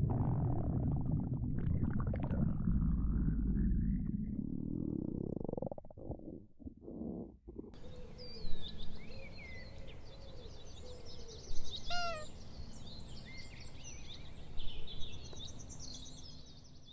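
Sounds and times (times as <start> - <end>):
low stomach growl: 0.0 - 7.9
songbirds chirping: 7.8 - 16.9.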